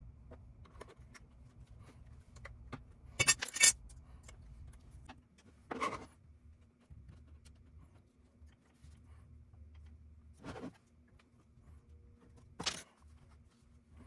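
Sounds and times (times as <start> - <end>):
small metal parts rattling: 3.2 - 3.8.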